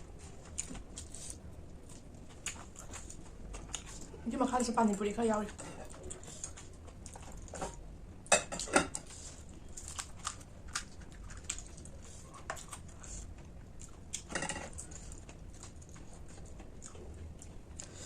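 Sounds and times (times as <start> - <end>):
crunching snack food: 9.7 - 13.2.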